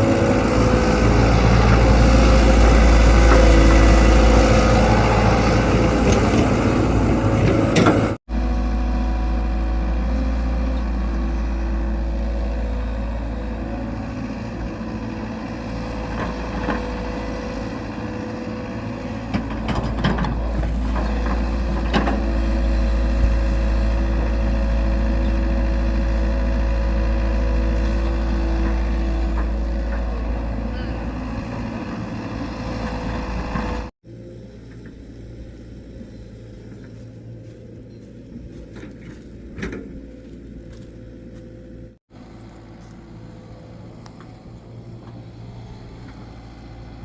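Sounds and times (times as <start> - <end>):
engine running: 0.0 - 47.0.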